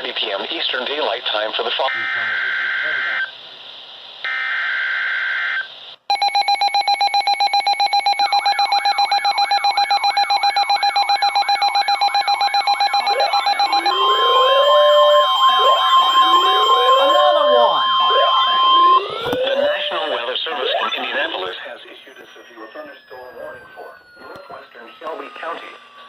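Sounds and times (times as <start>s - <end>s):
pulsing electronic alarm: 4.3s - 26.0s
shrill digital data tones: 6.2s - 26.0s
sweeping siren-like tones: 8.2s - 26.0s.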